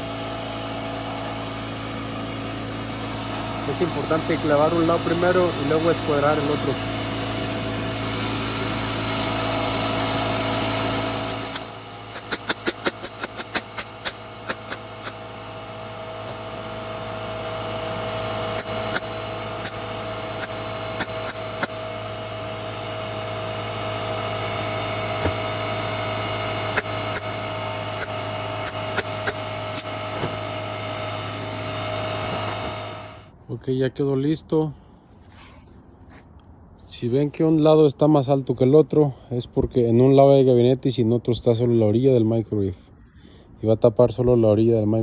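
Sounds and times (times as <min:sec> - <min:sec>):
steady machine hum: 0:00.0 - 0:33.4
pneumatic stapler shots: 0:11.2 - 0:15.2, 0:18.5 - 0:21.8, 0:26.6 - 0:30.5.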